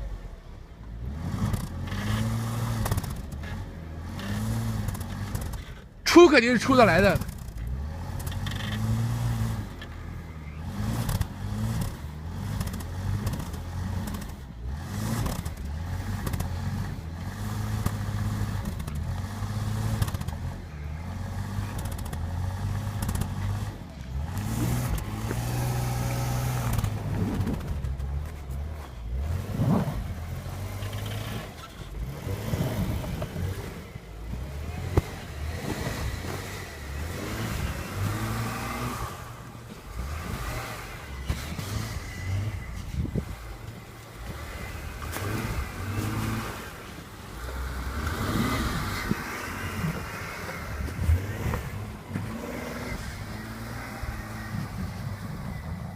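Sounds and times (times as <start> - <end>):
vehicle engine revving: 0.0 - 55.9
vehicle knocks and clatter: 1.4 - 5.9, 10.9 - 16.9, 21.4 - 29.4.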